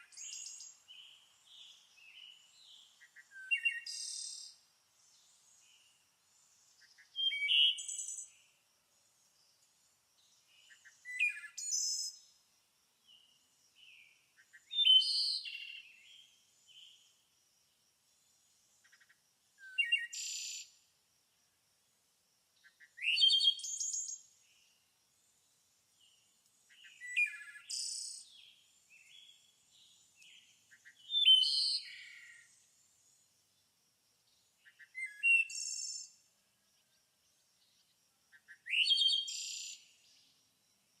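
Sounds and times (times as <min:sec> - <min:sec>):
bird chirping: 0:00.0 - 0:08.6, 0:09.2 - 0:12.4, 0:13.0 - 0:17.2, 0:18.2 - 0:20.8, 0:25.9 - 0:33.3, 0:34.3 - 0:37.0, 0:37.6 - 0:40.4.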